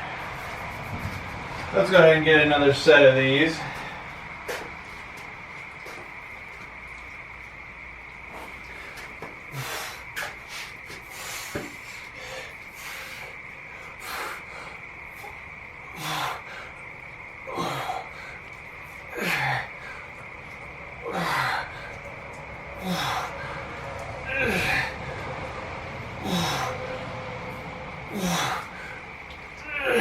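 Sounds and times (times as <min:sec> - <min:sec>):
man breathing forcefully: 0:03.6 - 0:04.7, 0:08.4 - 0:20.3, 0:21.0 - 0:30.0.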